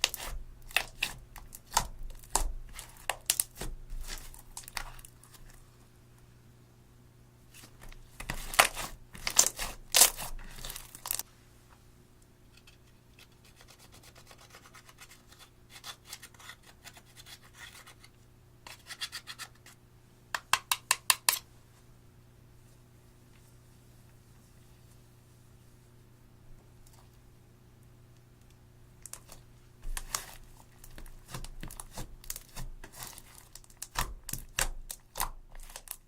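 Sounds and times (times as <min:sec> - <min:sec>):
hands squishing slime: 0:00.0 - 0:05.6, 0:07.5 - 0:11.2, 0:29.1 - 0:36.0.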